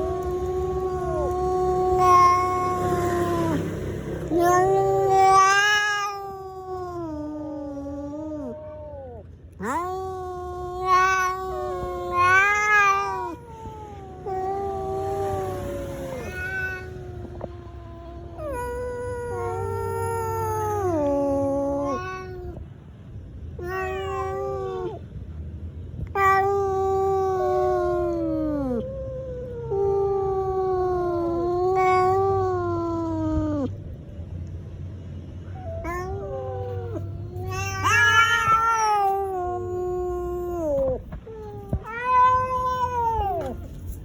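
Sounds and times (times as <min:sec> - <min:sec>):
angry cat yowling: 0:00.0 - 0:22.7, 0:23.6 - 0:25.1, 0:26.0 - 0:33.8, 0:35.4 - 0:44.0.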